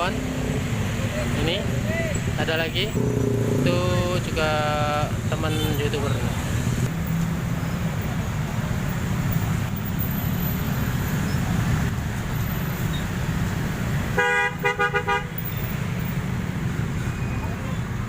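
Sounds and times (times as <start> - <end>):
bus engines and traffic rumble: 0.0 - 18.0
musical bus horn: 14.2 - 15.4.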